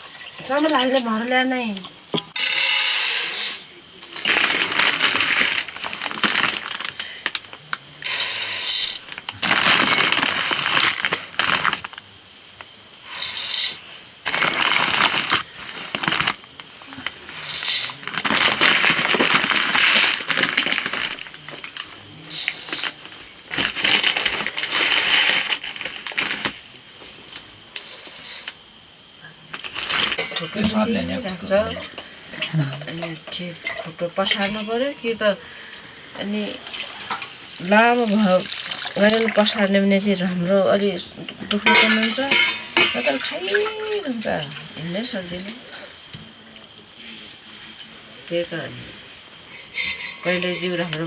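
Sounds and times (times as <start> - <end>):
rice rattling in metal vessel: 2.3 - 7.2, 8.0 - 12.0, 13.1 - 26.6, 36.6 - 40.0, 41.5 - 43.8, 49.5 - 51.0
bright hissing rush: 2.3 - 29.1, 35.1 - 39.8.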